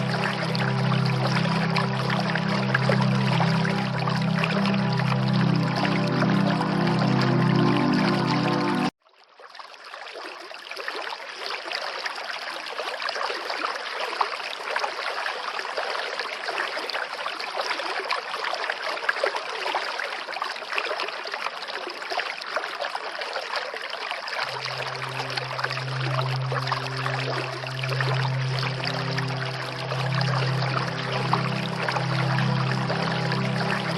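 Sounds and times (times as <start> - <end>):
music: 0.0 - 8.9, 24.5 - 33.9
running water rushing: 0.0 - 8.9, 9.7 - 33.9.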